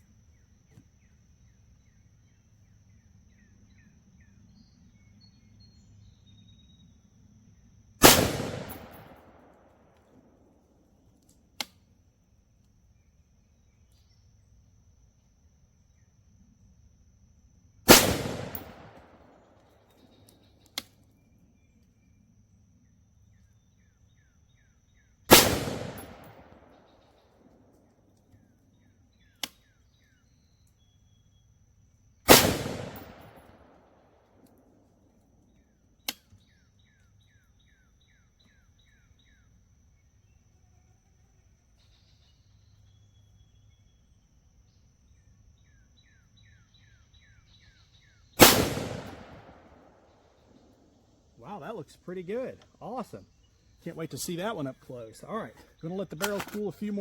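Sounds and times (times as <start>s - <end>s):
rifle shots with echo: 8.0s - 9.9s, 17.9s - 19.4s, 25.3s - 26.8s, 32.3s - 34.0s, 48.4s - 50.6s
sharp clicks: 56.0s - 57.0s.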